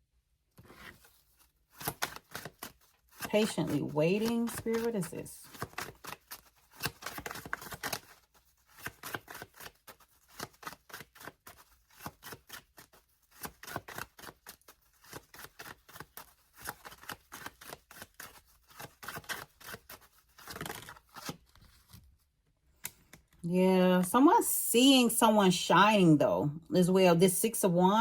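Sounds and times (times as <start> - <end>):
cards being shuffled: 0.6 - 22.1.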